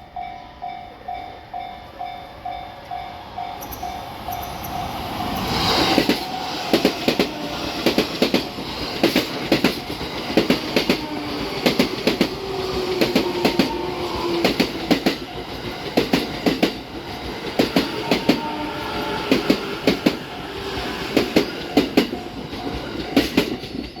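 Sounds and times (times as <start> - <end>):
train running noise: 0.0 - 24.0
train wheels clacking over rail joints: 5.4 - 24.0.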